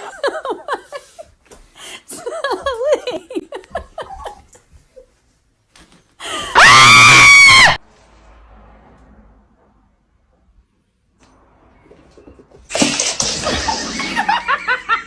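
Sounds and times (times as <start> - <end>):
person giggling: 2.1 - 5.1
loud scream: 6.4 - 7.8.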